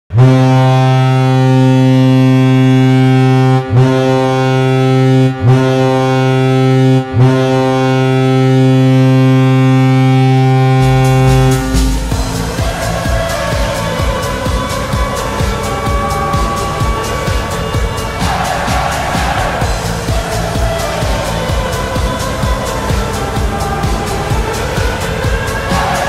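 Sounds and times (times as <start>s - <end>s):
low horn tone: 0.1s - 26.0s.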